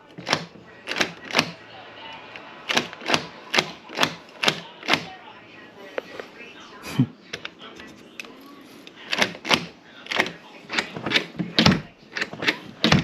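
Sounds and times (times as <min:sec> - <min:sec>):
door knob and latch clicking: 0:09.1 - 0:13.0.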